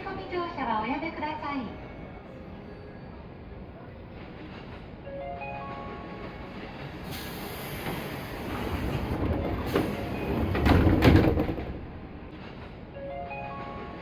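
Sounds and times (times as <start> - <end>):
pneumatic doors hissing and banging: 7.0 - 10.4
train door chime: 12.9 - 14.0.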